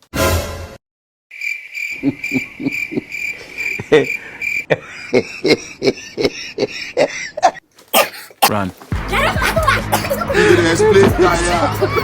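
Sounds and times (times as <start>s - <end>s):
crickets chirping: 1.3s - 4.8s
short cough: 7.9s - 8.7s, 9.9s - 10.3s.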